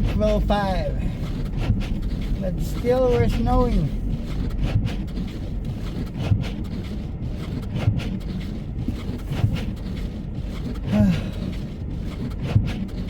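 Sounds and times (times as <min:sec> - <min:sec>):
car cabin low rumble: 0:00.0 - 0:13.0
windshield wipers swish-thump: 0:00.0 - 0:13.0.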